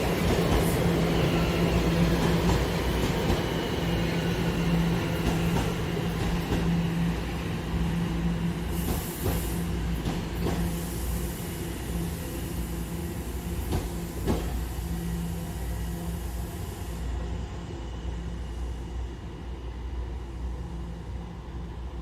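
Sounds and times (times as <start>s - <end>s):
subway train humming: 0.0s - 22.0s.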